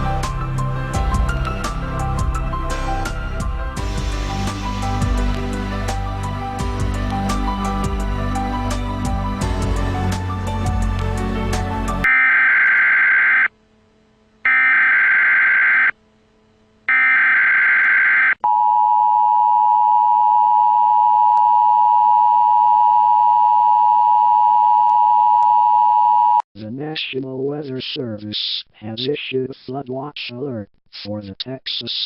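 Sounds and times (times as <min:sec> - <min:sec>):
buzzy digital data bursts: 0:14.5 - 0:15.9.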